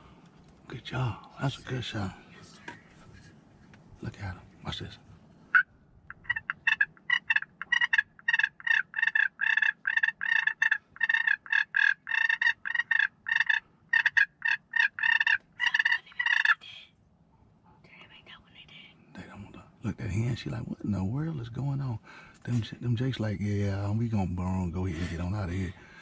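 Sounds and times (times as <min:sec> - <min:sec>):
turkey purring: 0:05.5 - 0:16.6.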